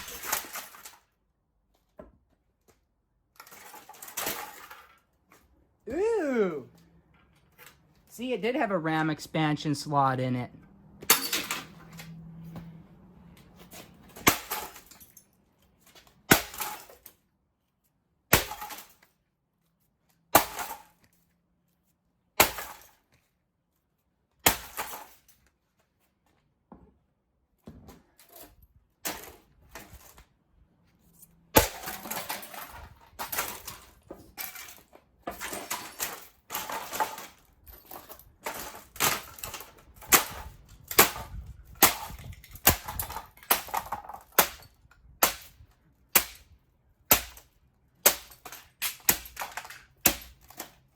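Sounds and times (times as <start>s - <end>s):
breaking and crashing: 0.0s - 1.2s, 3.3s - 5.2s, 14.0s - 17.2s, 18.3s - 19.2s, 22.4s - 23.0s, 31.5s - 45.6s, 46.2s - 50.9s.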